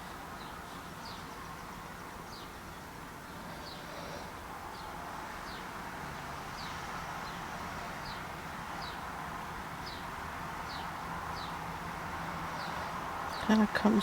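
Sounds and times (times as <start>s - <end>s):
bird chirping: 0.0s - 2.9s, 9.8s - 11.6s, 12.6s - 14.0s.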